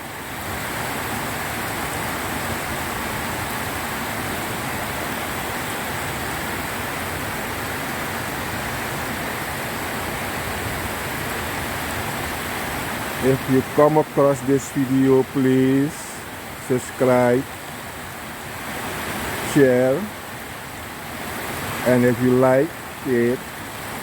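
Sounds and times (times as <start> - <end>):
heavy rain falling: 0.0 - 24.0.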